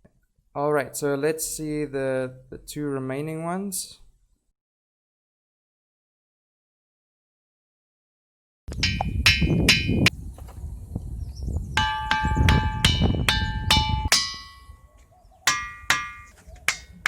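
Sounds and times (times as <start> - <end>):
ringing rock struck: 8.8 - 10.1, 11.8 - 14.8, 15.5 - 17.0.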